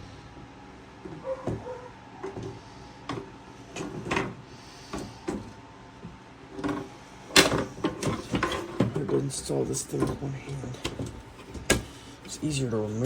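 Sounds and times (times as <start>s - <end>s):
computer case parts clunking: 6.6s - 13.0s.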